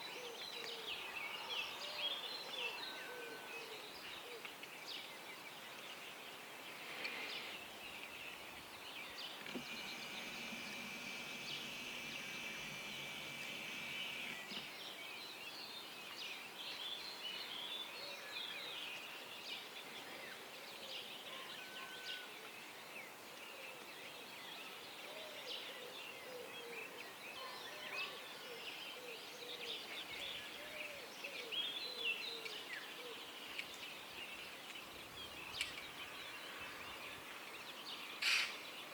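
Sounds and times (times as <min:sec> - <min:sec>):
birds singing: 0:00.0 - 0:38.9
lower repeated bird calls: 0:08.6 - 0:15.0
steady trilling: 0:09.4 - 0:14.8.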